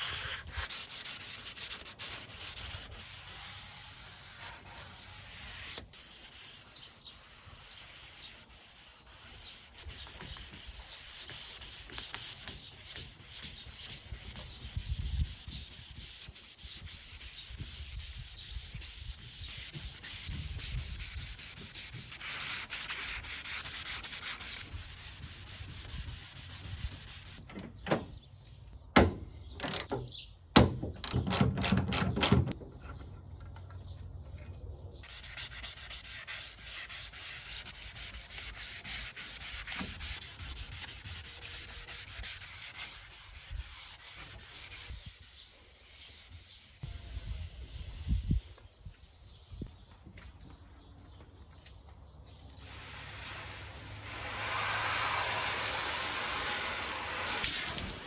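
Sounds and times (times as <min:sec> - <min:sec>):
sandpaper rubbing on metal: 0:00.0 - 0:27.4, 0:35.0 - 0:48.6.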